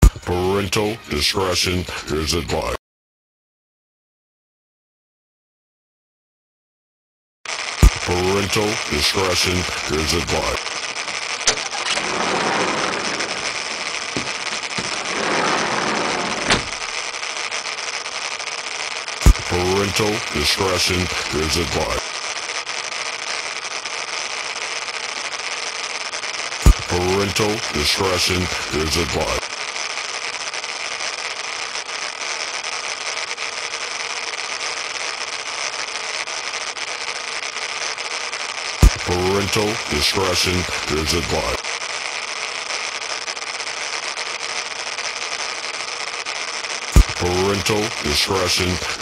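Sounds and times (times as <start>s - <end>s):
driving rain: 7.5s - 22.6s, 43.8s - 49.0s.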